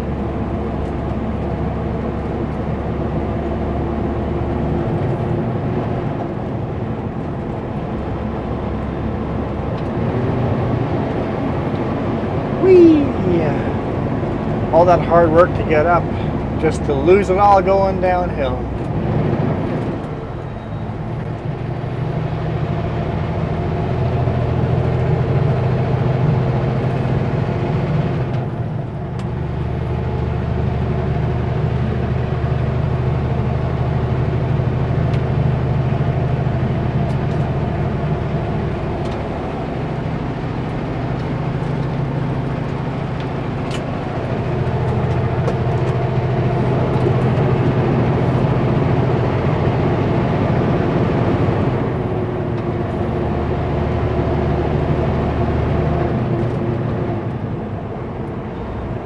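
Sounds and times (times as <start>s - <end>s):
truck diesel engine running: 0.0s - 59.0s.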